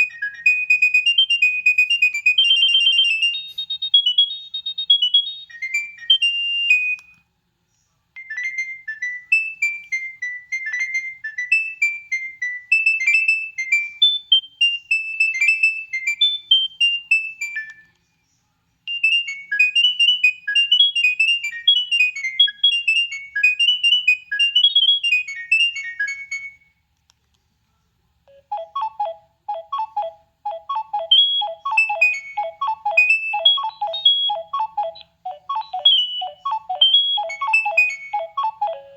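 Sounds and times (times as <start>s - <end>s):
mobile phone ringtones: 0.0s - 7.1s, 28.3s - 38.9s
high electronic melodies: 28.3s - 38.9s
low fast repeating ringtone: 28.3s - 38.9s.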